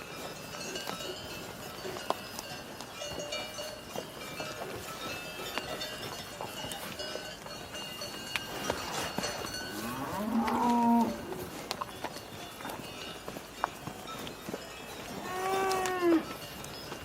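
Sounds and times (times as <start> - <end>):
cow mooing: 9.7 - 11.5, 15.2 - 16.4.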